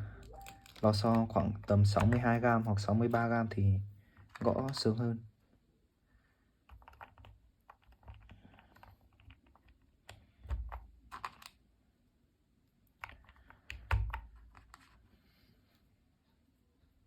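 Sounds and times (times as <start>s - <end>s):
mechanical keyboard clicks: 0.2s - 2.5s, 6.7s - 11.6s.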